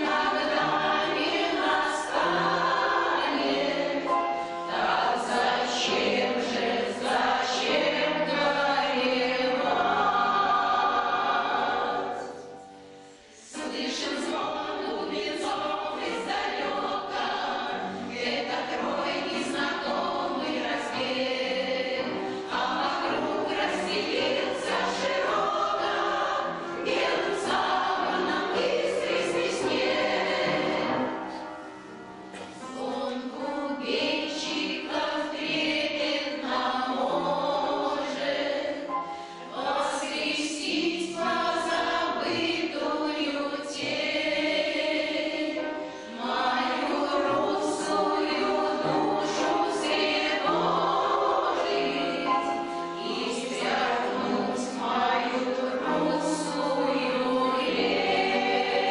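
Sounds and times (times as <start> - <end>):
choir singing: 0.0 - 58.9.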